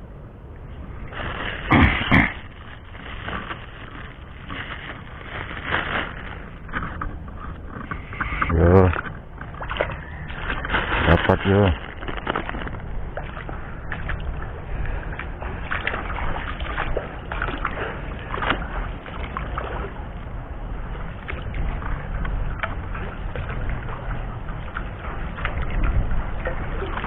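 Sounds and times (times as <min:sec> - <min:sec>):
river water running: 0:00.0 - 0:27.0.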